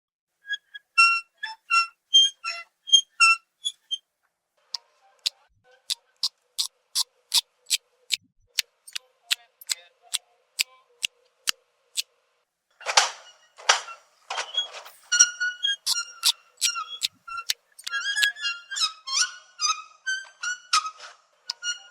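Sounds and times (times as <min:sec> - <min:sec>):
short hissing rasps: 0:07.3 - 0:07.8, 0:15.9 - 0:18.3
regular sharp clicks: 0:08.6 - 0:09.8, 0:15.9 - 0:18.3.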